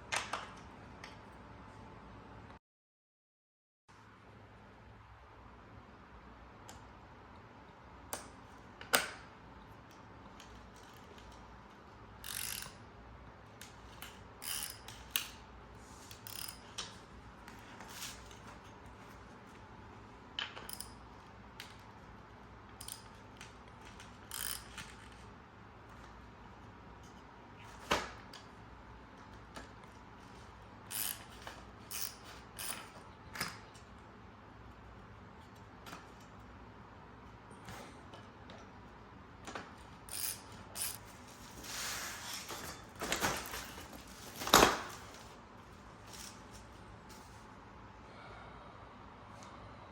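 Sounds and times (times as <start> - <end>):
hand tools on metal parts: 12.2 - 12.8, 14.0 - 15.3, 16.1 - 16.8, 22.8 - 23.2, 24.2 - 25.2, 30.9 - 33.8, 39.5 - 44.5.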